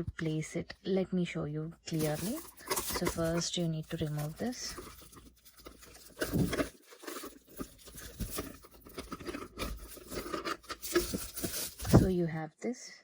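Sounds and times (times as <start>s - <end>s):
lamp parts rustling and clicking: 1.9s - 12.2s.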